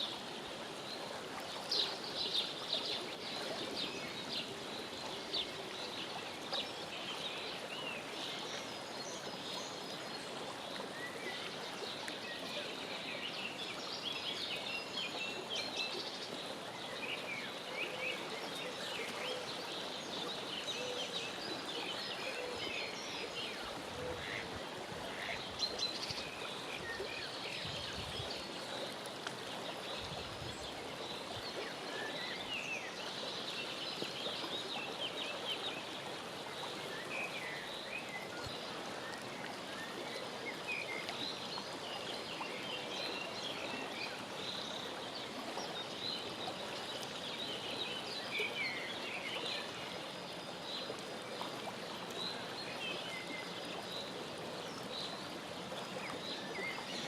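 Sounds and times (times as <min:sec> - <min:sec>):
running water: 0:00.0 - 0:57.0.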